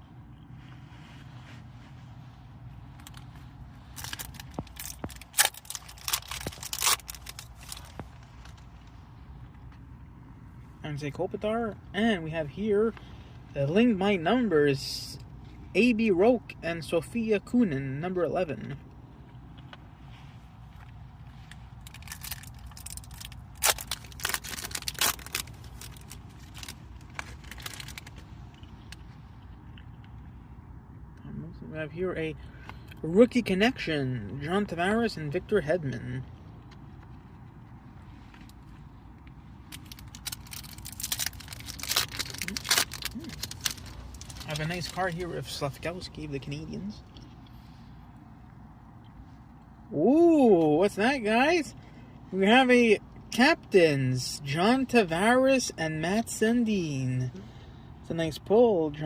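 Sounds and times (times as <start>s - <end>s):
car cabin rumble: 0.0s - 50.0s
card wrapper crinkling: 3.0s - 8.7s, 21.7s - 28.6s, 39.6s - 45.8s.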